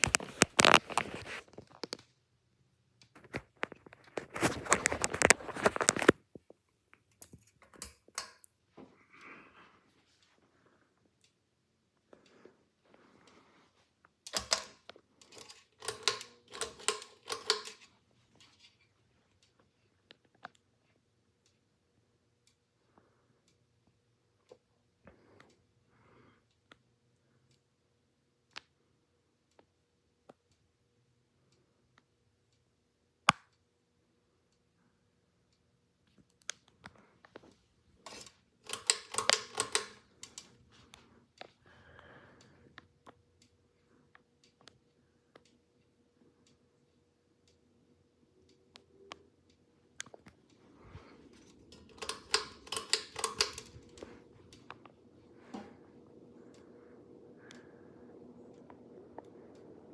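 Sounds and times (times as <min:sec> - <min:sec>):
clicking and rattling: 0:00.0 - 0:02.1, 0:03.1 - 0:06.4, 0:14.2 - 0:18.8, 0:37.3 - 0:40.6, 0:50.0 - 0:55.8
ceiling fan humming: 0:00.0 - 0:59.9
ceiling fan motor hum: 0:33.7 - 0:59.9.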